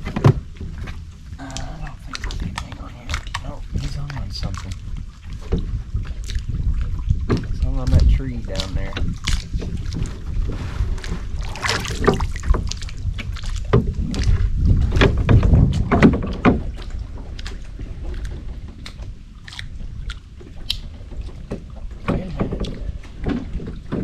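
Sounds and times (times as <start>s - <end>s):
water splashing: 0.0s - 24.0s
wind on microphone: 0.0s - 24.0s.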